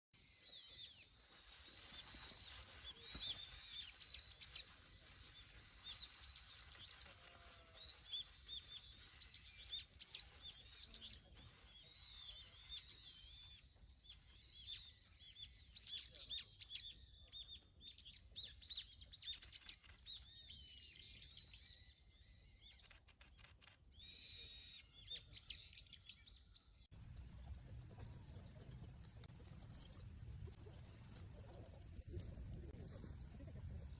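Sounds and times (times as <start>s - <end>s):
small birds chirping: 0.2s - 26.9s.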